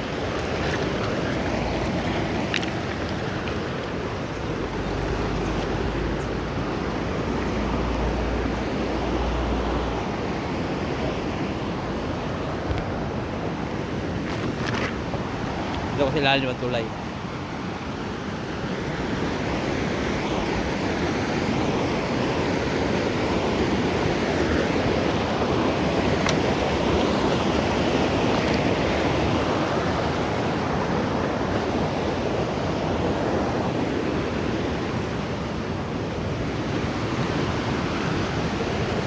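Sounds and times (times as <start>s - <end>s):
river water rushing over stones: 0.0s - 39.0s.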